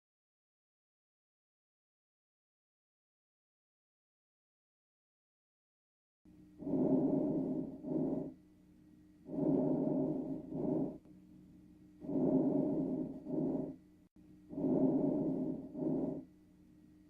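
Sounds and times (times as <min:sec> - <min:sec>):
faint steady hum: 0:06.3 - 0:17.0
breath sounds through stethoscope: 0:06.6 - 0:08.4, 0:09.3 - 0:11.0, 0:12.0 - 0:13.8, 0:14.5 - 0:16.3.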